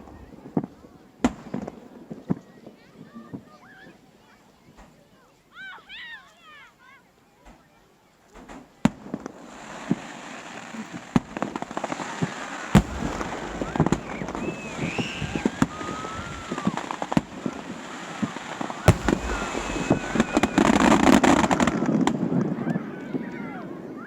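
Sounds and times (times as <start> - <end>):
fireworks bangs and crackling: 0.0 - 2.4, 8.4 - 23.2.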